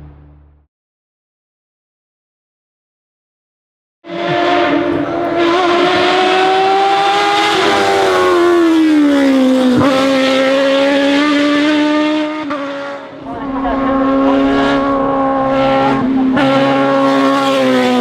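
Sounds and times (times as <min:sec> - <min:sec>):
race car engine at high revs: 0:04.1 - 0:18.0.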